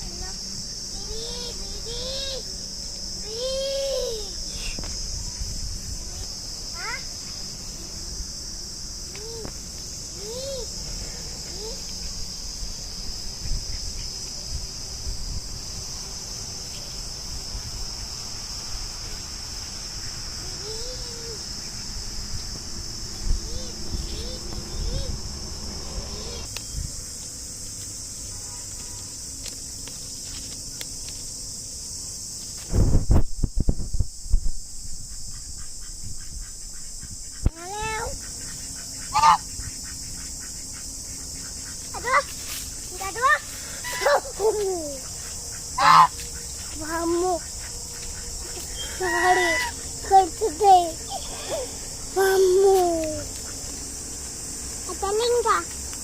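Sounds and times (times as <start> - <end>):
high-pitched insect chorus: 0.0 - 56.0
ducks honking: 38.2 - 42.2, 43.8 - 44.3, 45.1 - 46.8, 47.4 - 50.1.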